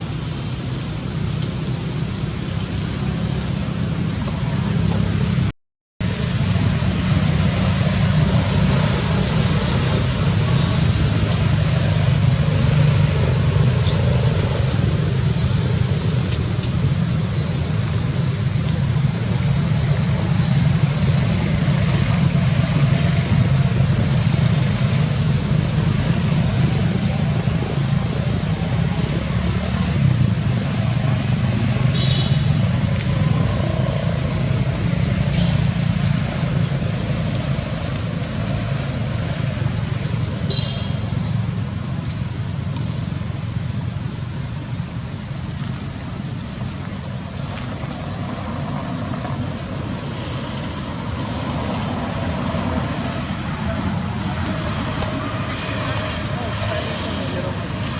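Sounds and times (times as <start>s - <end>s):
low outdoor rumble: 0.0s - 57.9s.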